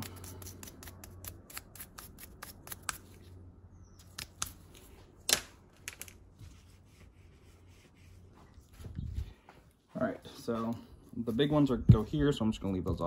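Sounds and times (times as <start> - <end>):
scratchy strokes: 6.4 - 9.2.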